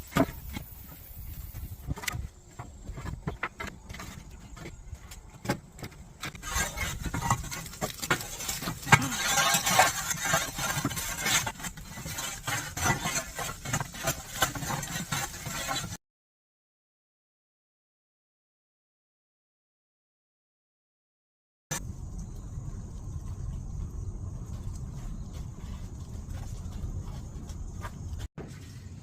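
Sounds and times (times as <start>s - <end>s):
wood fire roaring and crackling: 6.0s - 15.6s, 21.7s - 28.2s.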